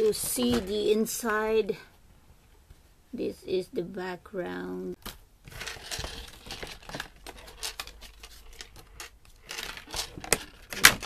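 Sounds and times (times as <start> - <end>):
plastic and cardboard crinkling: 5.5 - 11.0.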